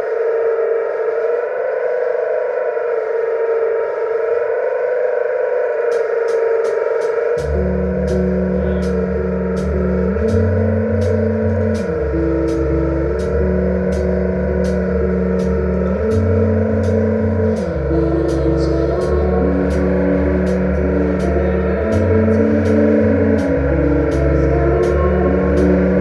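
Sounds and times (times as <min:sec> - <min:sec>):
bass line: 0:06.8 - 0:26.0.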